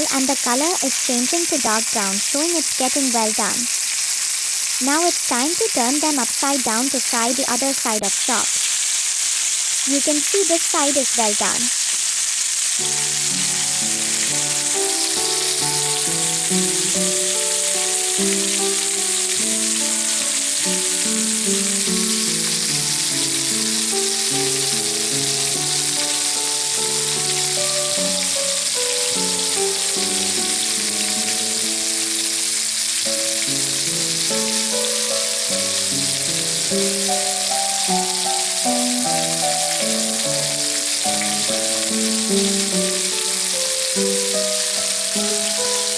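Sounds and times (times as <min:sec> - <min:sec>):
lamb chops sizzling: 0:00.0 - 0:45.9
background music with held notes: 0:12.8 - 0:45.9.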